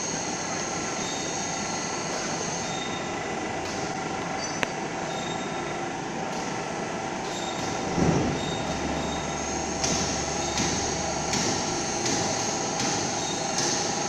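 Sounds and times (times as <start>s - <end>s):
steady machinery noise: 0.0s - 14.0s
low hum: 7.8s - 12.1s.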